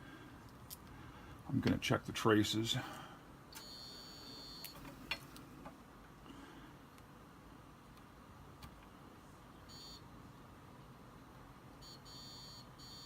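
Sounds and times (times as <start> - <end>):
continuity tester beeping: 3.6 - 4.9, 9.7 - 10.0, 11.8 - 13.0.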